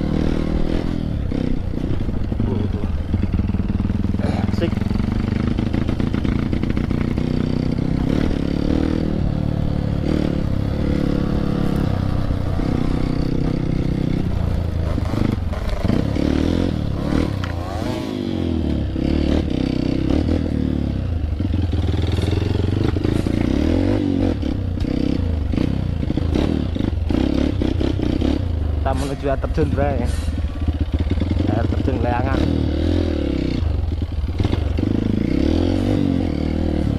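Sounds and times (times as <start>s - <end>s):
dirt bike engine revving: 0.0s - 36.9s
clatter over rough ground: 0.3s - 18.0s, 21.4s - 32.6s.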